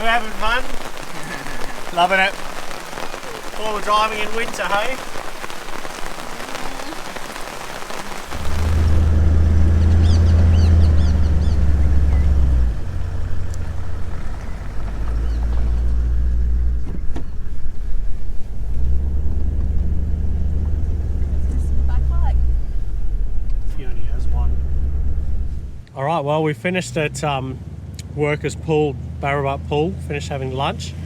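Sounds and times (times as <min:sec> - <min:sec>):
rain falling: 0:00.0 - 0:25.8
vehicle engine droning: 0:08.3 - 0:25.8.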